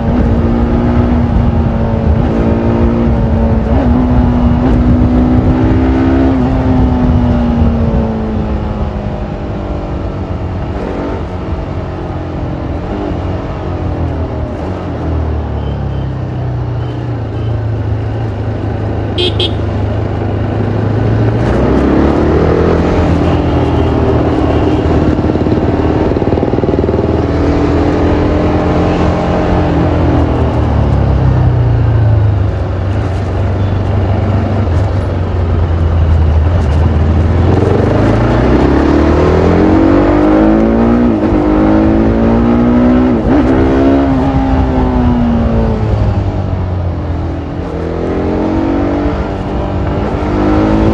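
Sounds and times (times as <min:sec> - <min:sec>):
motorcycle engine revving: 0:16.8 - 0:50.9.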